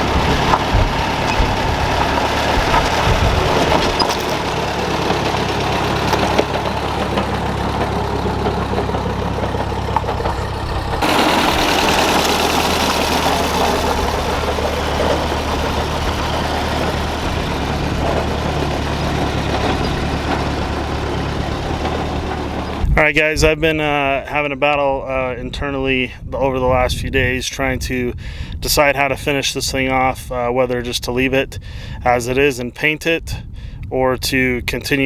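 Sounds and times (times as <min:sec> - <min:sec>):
tractor engine running: 0:00.0 - 0:24.1.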